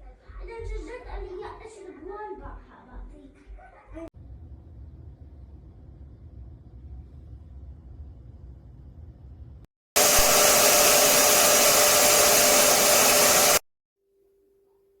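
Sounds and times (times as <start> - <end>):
carpet cleaner suction motor running: 10.0 - 13.6.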